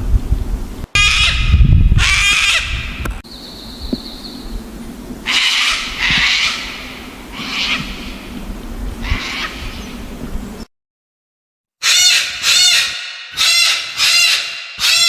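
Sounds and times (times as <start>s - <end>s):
parrots squawking: 1.0s - 2.8s, 5.3s - 8.1s, 9.0s - 9.6s, 11.8s - 15.0s.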